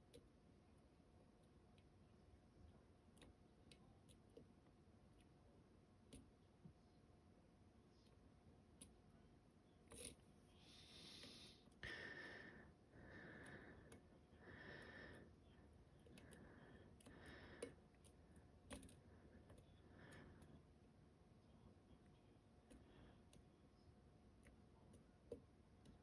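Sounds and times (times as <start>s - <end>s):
faint breathing: 10.5s - 20.7s.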